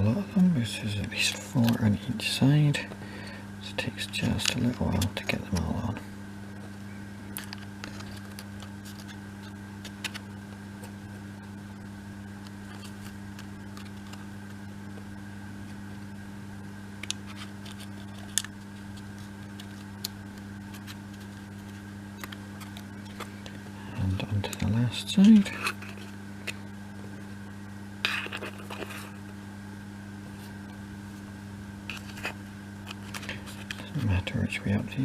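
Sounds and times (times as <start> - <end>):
low electrical hum: 0.0 - 35.0.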